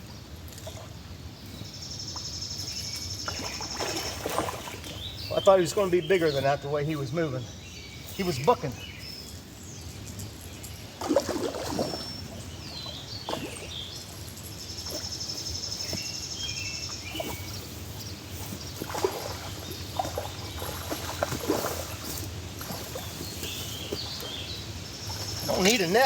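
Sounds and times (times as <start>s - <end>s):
water splashing: 2.6s - 7.4s, 11.0s - 26.0s
fish thrashing at surface: 18.8s - 24.2s.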